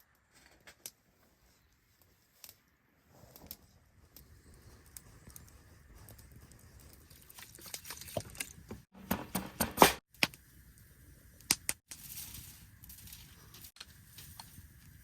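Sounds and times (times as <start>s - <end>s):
sharp clicks and knocks: 8.7s - 10.4s.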